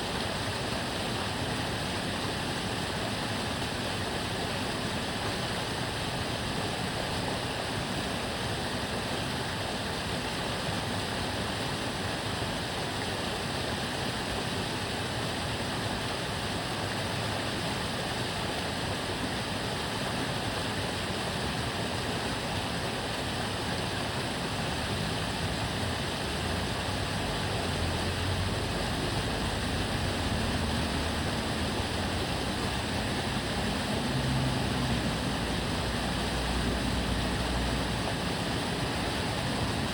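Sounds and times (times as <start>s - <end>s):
low rumble of road traffic: 0.0s - 10.5s, 20.3s - 39.9s
canal water flowing and babbling: 0.0s - 39.9s.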